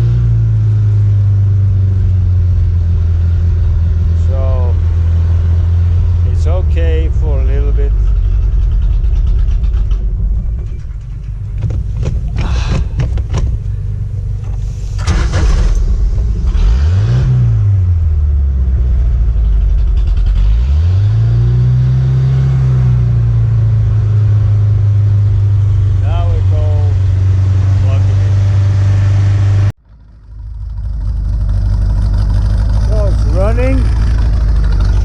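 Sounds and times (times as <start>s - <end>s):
boat engine revving: 2.3s - 35.0s
knocks and rattles: 6.6s - 16.9s.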